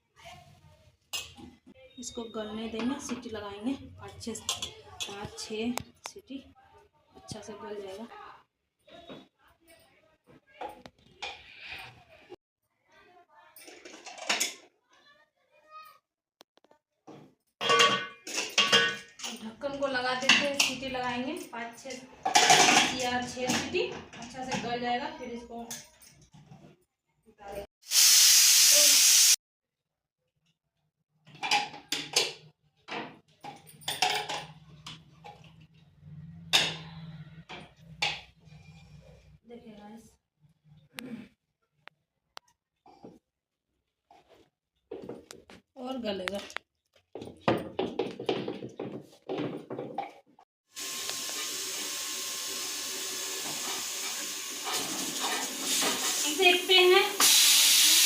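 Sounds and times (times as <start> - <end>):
kitchen utensils clattering: 4.1 - 5.4, 13.6 - 14.7, 17.6 - 24.9, 31.3 - 35.8, 53.0 - 57.4
pressure cooker steam hiss: 27.8 - 29.4, 50.8 - 58.0.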